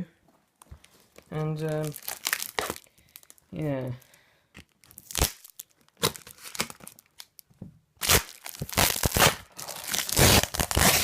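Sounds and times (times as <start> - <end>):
packing material crumpling and tearing: 1.1 - 3.4, 4.7 - 7.4, 8.0 - 11.0.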